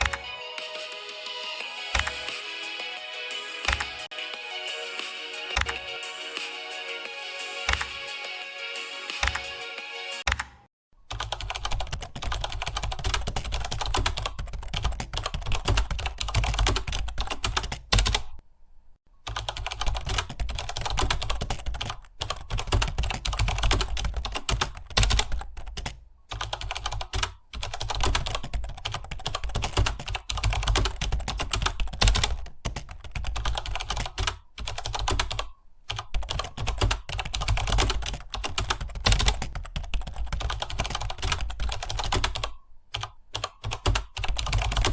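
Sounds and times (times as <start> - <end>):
typing on computer keyboard: 1.9 - 2.4, 3.6 - 4.0, 7.7 - 7.9, 10.3 - 18.4, 19.2 - 44.9.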